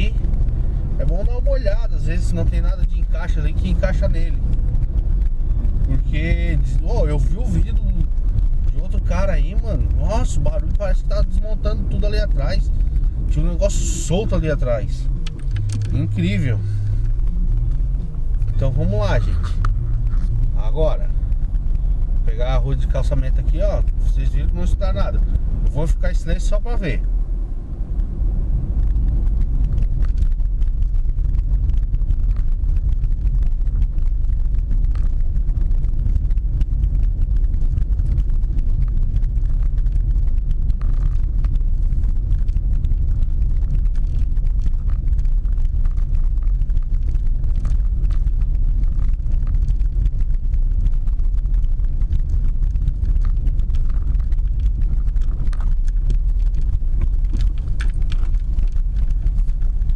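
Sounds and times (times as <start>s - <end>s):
tyres rumbling over cobblestones: 0.0s - 59.9s
small ticks and knocks: 28.8s - 59.8s.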